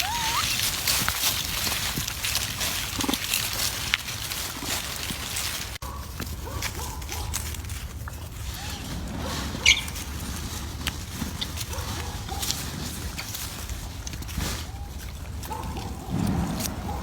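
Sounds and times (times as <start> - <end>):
monkeys squeaking: 0.0 - 0.8, 8.5 - 12.4
rustling: 0.0 - 17.0.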